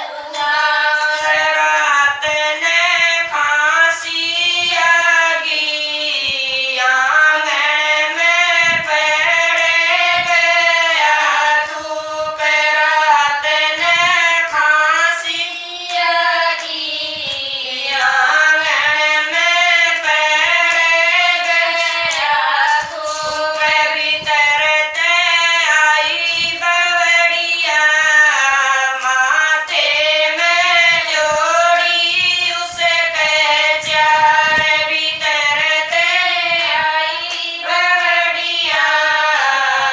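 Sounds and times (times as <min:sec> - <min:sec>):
women singing in unison: 0:00.0 - 0:39.9.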